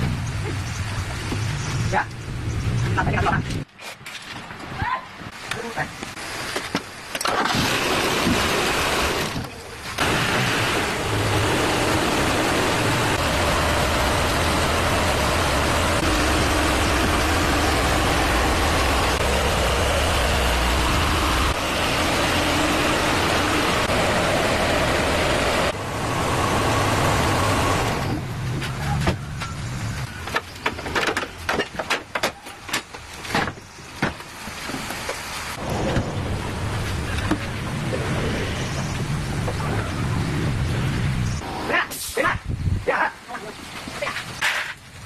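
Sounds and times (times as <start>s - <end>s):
car engine running: 7.7s - 30.1s.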